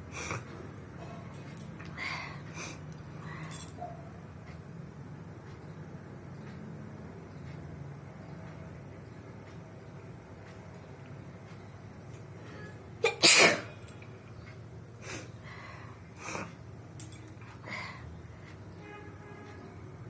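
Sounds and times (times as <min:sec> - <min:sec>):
soft breathy noises: 0:01.8 - 0:03.8, 0:15.0 - 0:16.6, 0:17.4 - 0:18.7.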